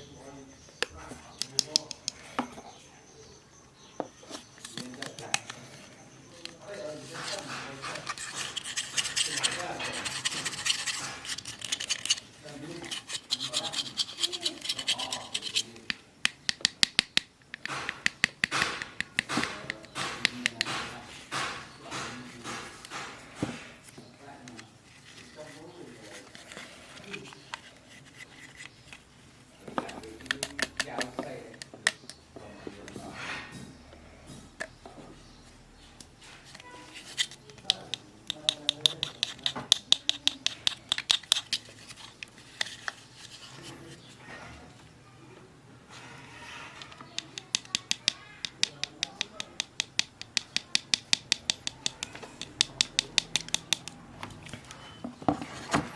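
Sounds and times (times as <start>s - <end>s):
sharp clicks and taps: 0.8s - 2.6s, 15.4s - 23.6s, 36.0s - 43.0s, 46.8s - 54.8s.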